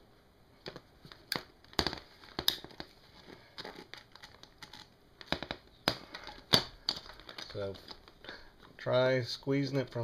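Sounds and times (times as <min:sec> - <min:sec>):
plastic case cracking and creaking: 0:00.6 - 0:08.3.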